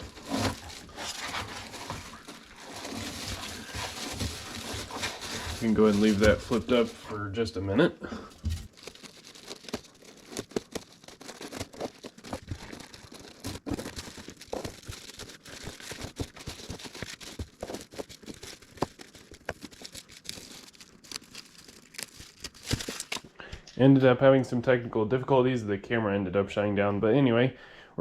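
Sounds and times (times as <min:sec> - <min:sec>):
vinyl sheeting crinkling: 0:00.0 - 0:23.3
small clicks and crackles: 0:08.4 - 0:23.3.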